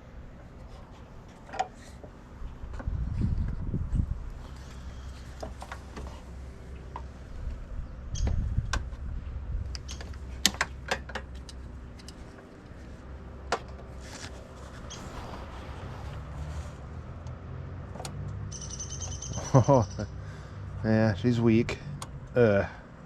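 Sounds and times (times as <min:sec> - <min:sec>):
steady low hum: 0:00.0 - 0:18.1.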